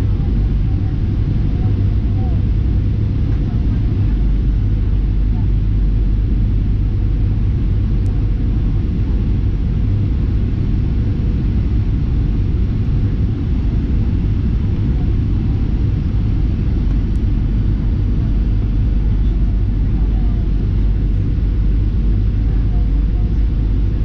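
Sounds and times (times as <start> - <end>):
airplane cabin engine rumble: 0.0 - 24.0.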